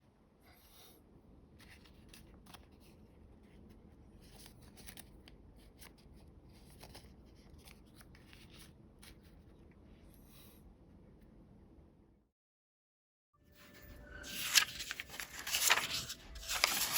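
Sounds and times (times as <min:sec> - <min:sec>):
paper crinkling and rustling: 0:01.6 - 0:09.5, 0:13.6 - 0:16.9.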